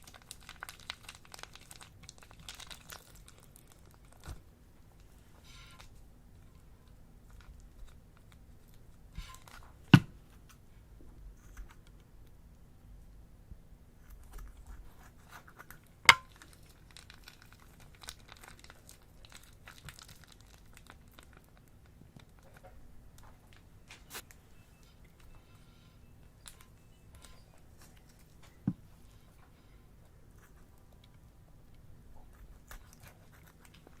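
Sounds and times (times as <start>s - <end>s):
plastic bags crinkling: 0.0s - 4.3s, 16.1s - 21.7s.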